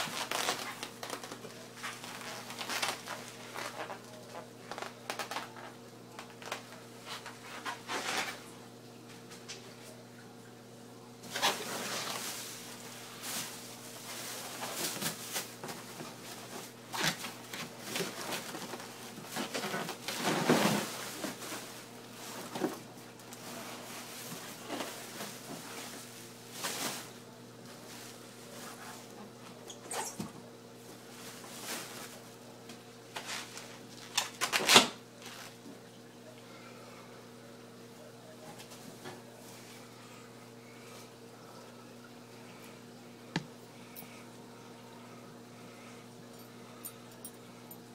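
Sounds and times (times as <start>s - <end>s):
cardboard and plastic rustling: 0.0s - 8.4s, 11.2s - 30.3s, 30.9s - 32.4s, 33.1s - 35.7s
steady low hum: 35.0s - 47.9s.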